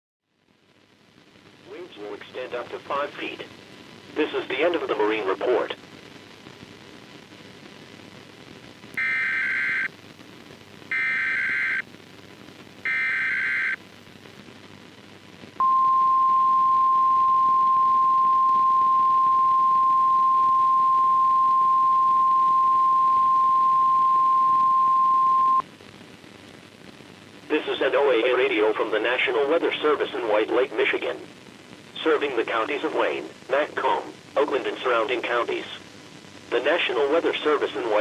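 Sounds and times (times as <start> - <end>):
buzzy data bursts: 9.0 - 9.9, 10.9 - 11.8, 12.8 - 13.8
steady warning alarm tone: 9.0 - 9.9, 10.9 - 11.8, 12.9 - 13.8.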